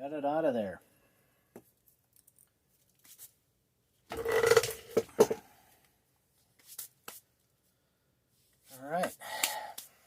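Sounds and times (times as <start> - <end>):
hard parts scraping and clattering: 4.1 - 5.4.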